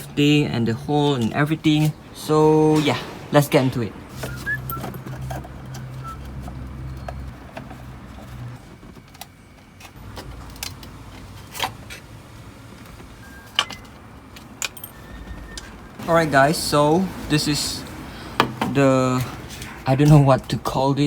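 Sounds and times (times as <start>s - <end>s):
car trim clicks and knocks: 18.4s - 18.8s.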